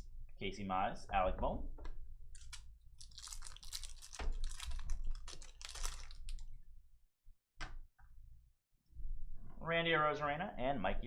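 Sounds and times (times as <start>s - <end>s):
cards rustling and clicking: 2.4s - 6.5s.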